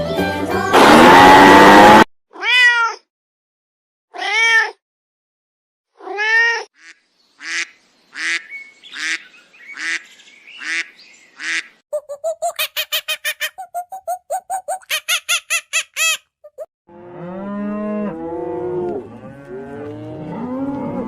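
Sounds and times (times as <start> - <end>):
large bird calling: 6.8 - 16.7.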